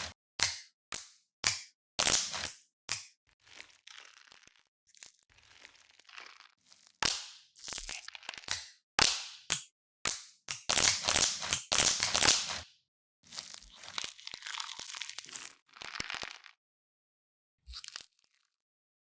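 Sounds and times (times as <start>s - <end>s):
brittle crackling and crunching: 13.3s - 16.6s.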